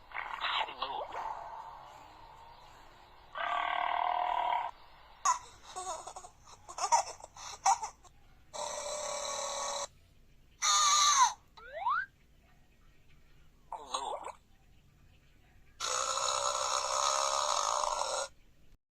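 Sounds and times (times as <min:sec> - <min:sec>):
person burping: 0:15.8 - 0:18.3.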